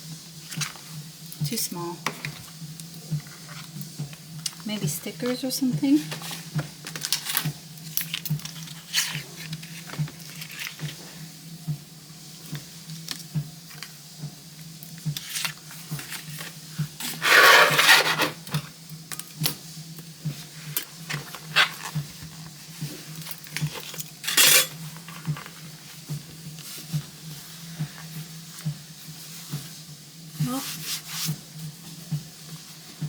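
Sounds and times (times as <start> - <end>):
leather rubbing and scraping: 15.3 - 18.5, 21.1 - 22.4, 23.6 - 25.4.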